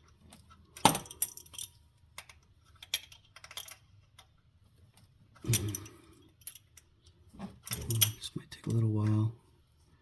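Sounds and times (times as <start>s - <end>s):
hand tools clinking against metal: 5.4s - 6.9s, 7.6s - 8.9s.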